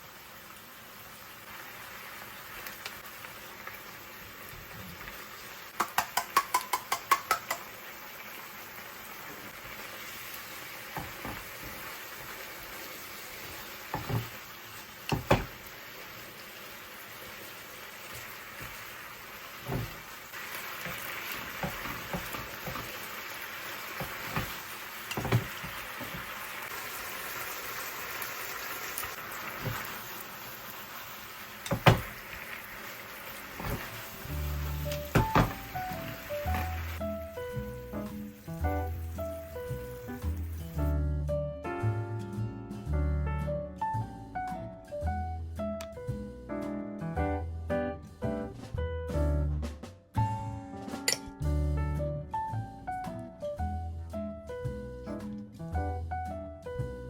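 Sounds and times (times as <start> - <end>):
chicken sizzling in a frying pan: 0.0 - 41.1
utensil knocking against pan: 5.8 - 7.7.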